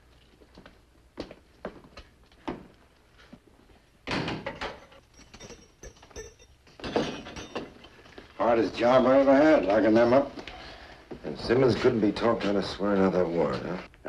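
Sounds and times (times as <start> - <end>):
soft footsteps: 0.1 - 3.9
faint metallic ring: 4.8 - 6.6.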